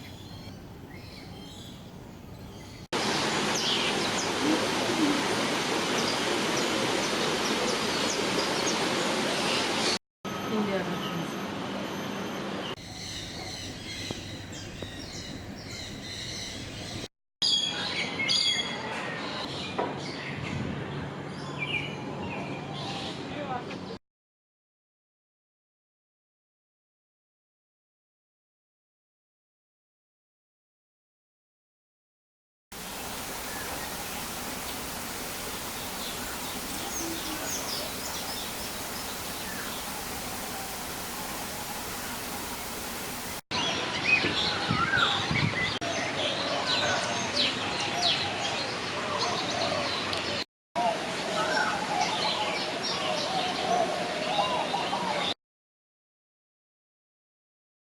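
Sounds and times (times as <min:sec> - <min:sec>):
birds chirping and calling: 0:32.8 - 0:43.4
steady background hiss: 0:32.8 - 0:43.4.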